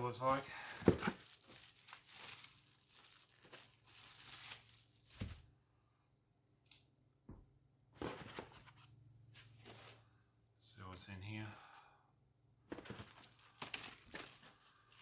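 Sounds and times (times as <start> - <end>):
cardboard tearing and rustling: 0.8 - 5.4, 12.7 - 15.0.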